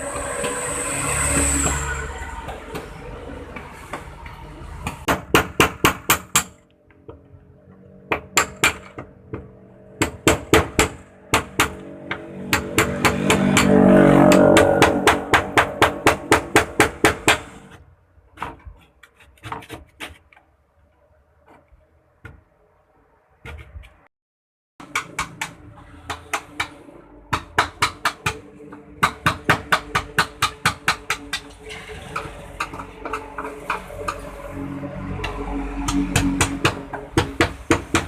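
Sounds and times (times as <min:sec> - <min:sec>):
hammer blows on sheet metal: 0:10.0 - 0:17.7.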